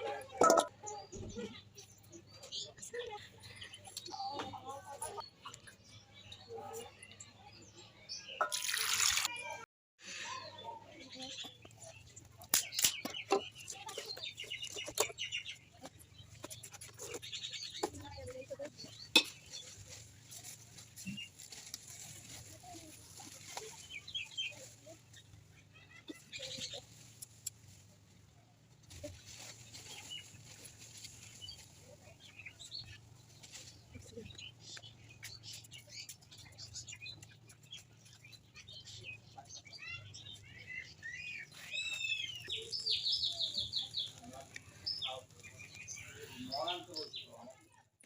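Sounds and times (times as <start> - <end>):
bird-like chirps: 10.1 - 20.0, 29.7 - 47.6.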